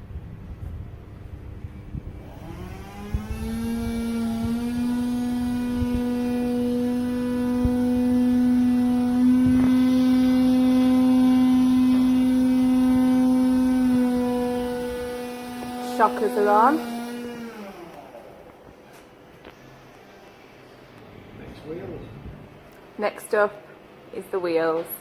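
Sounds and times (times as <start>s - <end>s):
motor spinning up: 1.8s - 18.7s.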